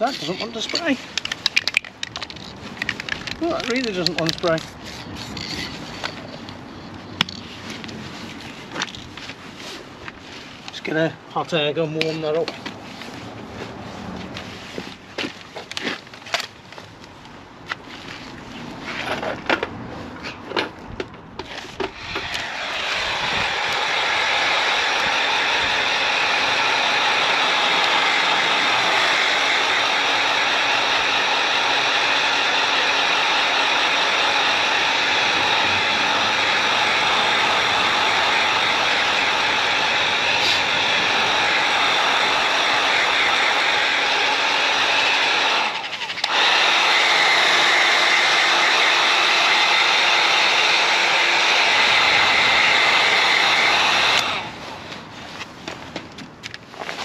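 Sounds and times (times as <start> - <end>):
hot air gun blowing: 21.5 - 54.9.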